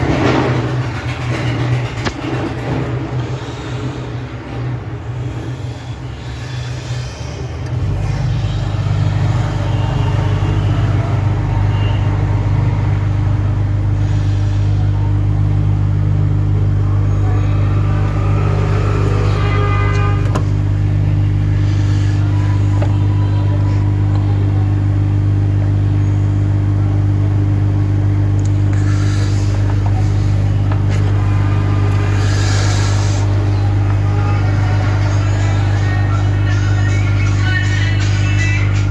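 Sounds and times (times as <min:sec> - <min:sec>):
hot air rework station blowing: 0:00.0 - 0:25.1, 0:28.3 - 0:36.8.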